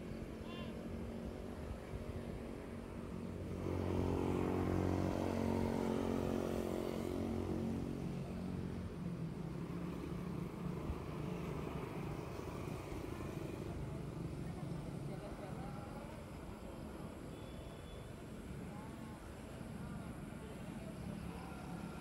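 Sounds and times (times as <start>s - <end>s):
low rumble of traffic: 0.0s - 22.0s
vehicle passing by: 2.7s - 15.3s.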